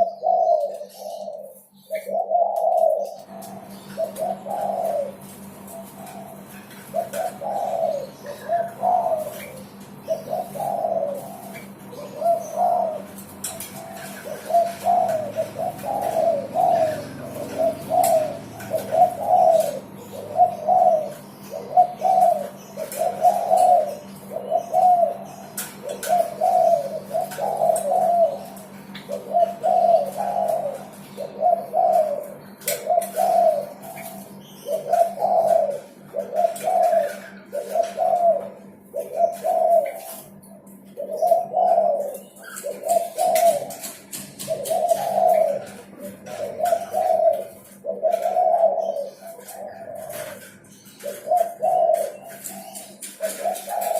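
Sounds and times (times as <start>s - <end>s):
dove cooing: 0.0s - 53.9s.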